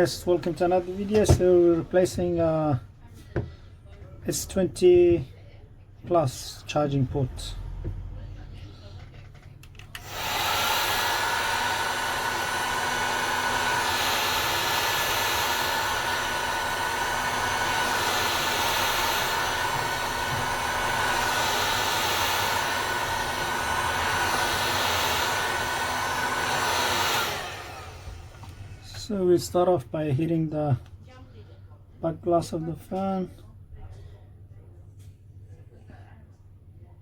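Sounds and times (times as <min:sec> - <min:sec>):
heat gun blowing air: 0:10.0 - 0:28.6.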